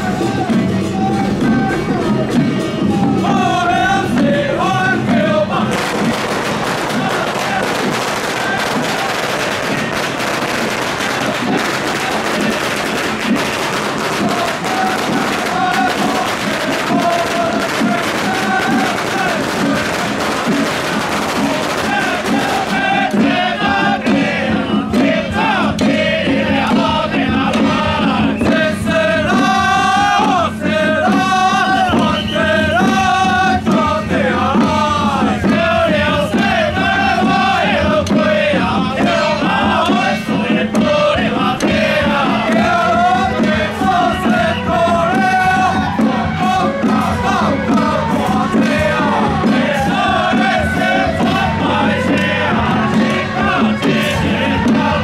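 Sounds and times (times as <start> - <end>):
procession music with wavering melody: 25.9 - 55.0.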